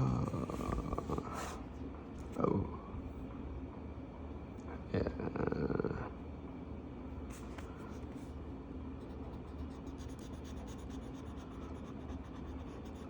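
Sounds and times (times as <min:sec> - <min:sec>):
low steady hum: 0:00.0 - 0:13.0
marker rubbing on paper: 0:09.0 - 0:13.0.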